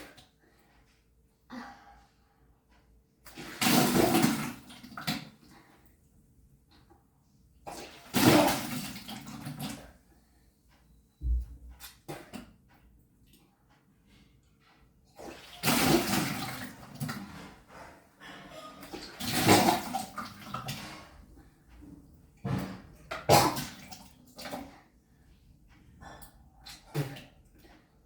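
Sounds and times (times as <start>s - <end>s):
person vomiting water: 23.1s - 24.0s.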